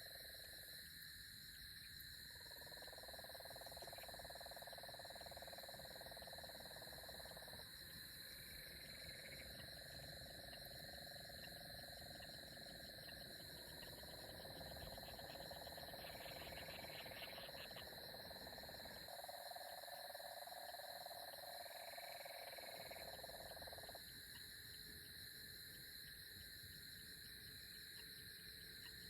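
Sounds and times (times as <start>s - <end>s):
insects droning: 0.0s - 29.0s
animal pulsed trill: 1.8s - 25.1s.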